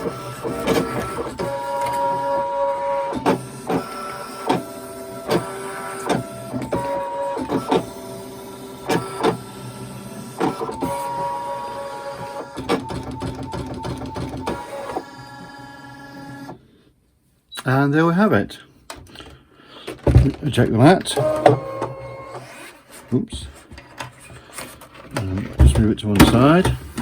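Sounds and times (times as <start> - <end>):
cutting machine motors whirring: 0.0 - 16.6, 20.0 - 22.7.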